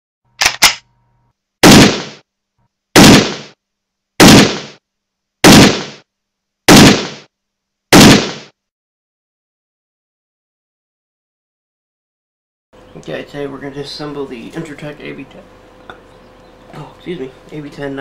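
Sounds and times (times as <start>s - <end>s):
quick clicks: 0.4s - 0.8s
loud gunshots: 1.6s - 2.2s, 3.0s - 3.6s, 4.2s - 4.8s, 5.4s - 6.0s, 6.7s - 7.3s, 7.9s - 8.6s.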